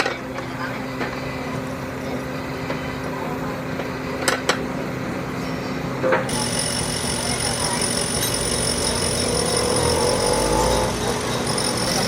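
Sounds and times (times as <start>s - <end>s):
steady mechanical hum: 0.0s - 12.0s
sharp metallic clinks: 6.3s - 12.0s.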